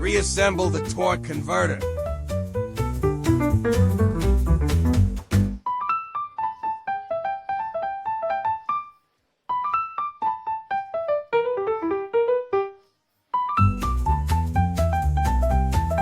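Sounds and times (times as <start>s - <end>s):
music arrangement with bass: 0.0s - 5.6s, 13.6s - 16.0s
keyboard melody: 0.0s - 16.0s.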